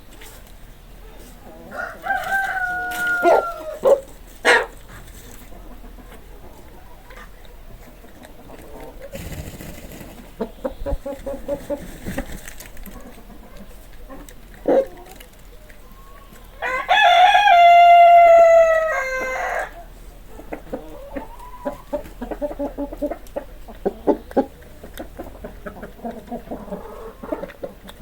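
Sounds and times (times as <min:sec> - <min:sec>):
chickens clucking: 0:00.0 - 0:28.0
rooster crowing: 0:01.7 - 0:03.9, 0:16.6 - 0:19.8.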